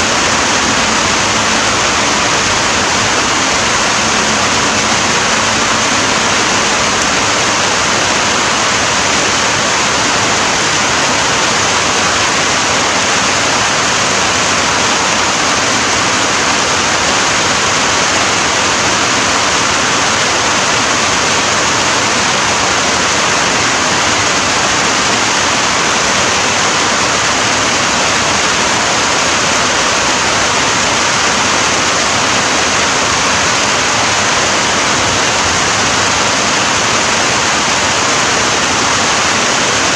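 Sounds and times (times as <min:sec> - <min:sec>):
heavy rainfall: 0:00.0 - 0:39.9.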